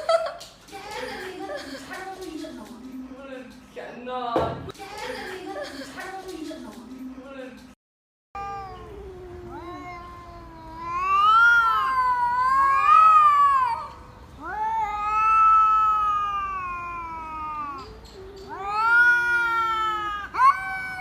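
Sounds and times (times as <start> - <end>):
cat yowling: 8.4 - 21.0.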